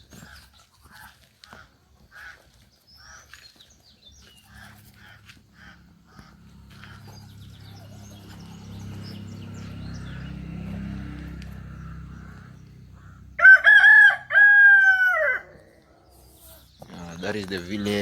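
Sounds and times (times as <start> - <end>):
rooster crowing: 13.4 - 15.8.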